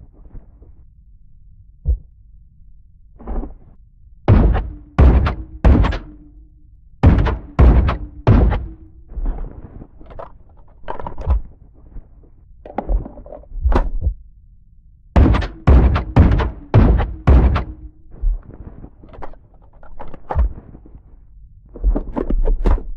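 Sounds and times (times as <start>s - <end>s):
rifle shots: 4.3s - 6.2s, 7.0s - 8.9s, 15.2s - 18.0s
softer gunshot reports: 4.3s - 6.2s, 7.0s - 8.9s, 15.2s - 17.9s.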